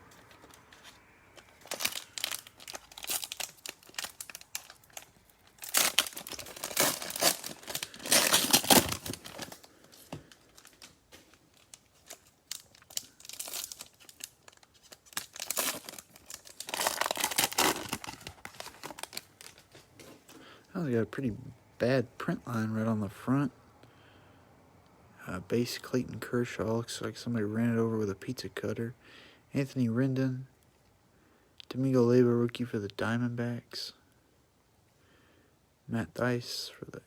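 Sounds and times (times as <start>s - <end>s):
plastic wrapper crinkling: 0.0s - 20.3s.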